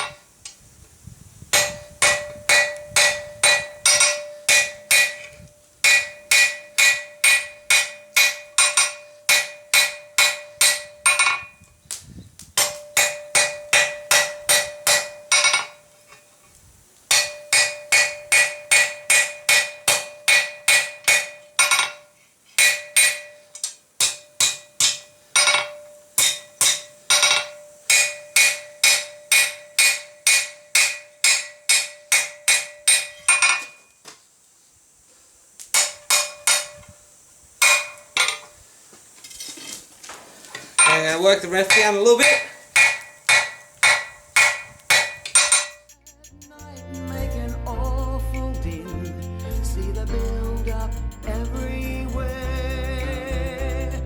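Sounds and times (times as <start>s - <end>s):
hammer striking steel on anvil: 1.5s - 11.5s, 12.6s - 15.8s, 17.1s - 33.8s, 35.7s - 36.9s, 37.6s - 38.5s, 40.8s - 49.2s.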